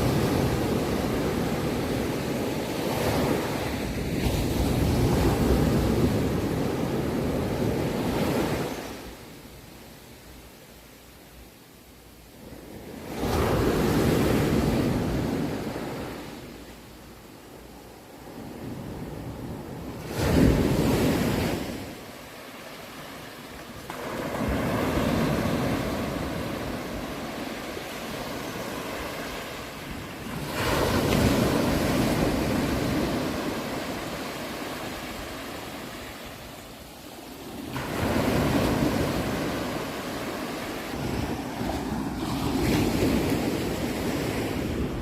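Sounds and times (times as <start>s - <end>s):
sea waves breaking: 18.3s - 45.0s.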